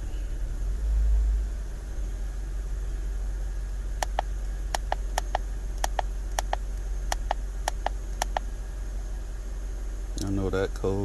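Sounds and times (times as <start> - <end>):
car engine humming: 0.0 - 11.0
button clicks: 4.0 - 8.4.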